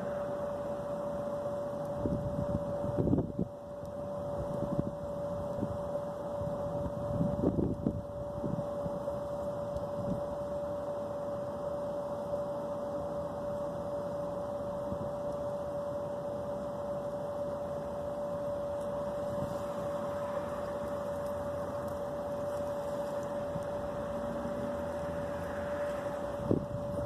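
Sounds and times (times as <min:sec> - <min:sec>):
background hum and hiss: 0:00.0 - 0:27.0
constant mid-pitched tone: 0:00.0 - 0:27.0.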